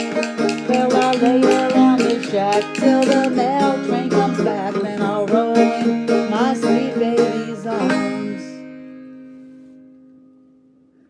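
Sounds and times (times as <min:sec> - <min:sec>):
banjos playing: 0:00.0 - 0:10.0
banjo chord ringing: 0:00.0 - 0:10.8.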